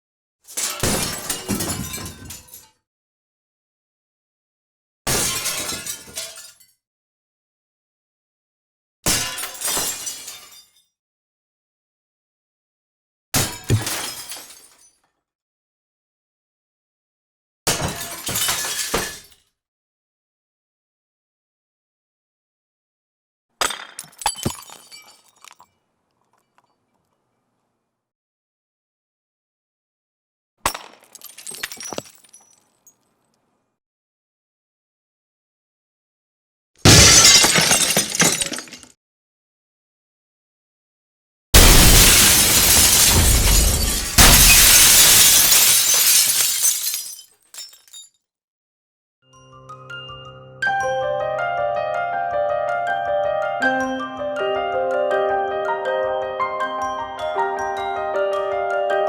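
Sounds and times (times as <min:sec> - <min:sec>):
glass pane shattering: 0:13.6 - 0:14.7, 0:23.6 - 0:25.6, 0:36.9 - 0:38.9, 0:41.6 - 0:48.1
glass smashing: 0:13.6 - 0:14.7, 0:23.6 - 0:25.7, 0:30.7 - 0:33.0, 0:36.9 - 0:38.9, 0:41.6 - 0:48.1
glass shards tinkling: 0:31.3 - 0:33.1, 0:42.3 - 0:48.1.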